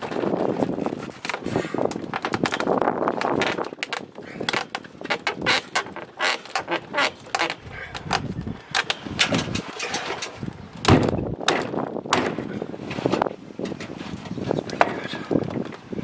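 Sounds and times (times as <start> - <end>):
knocks and clatter of building work: 0.0 - 15.8
heavy thud: 10.8 - 12.5.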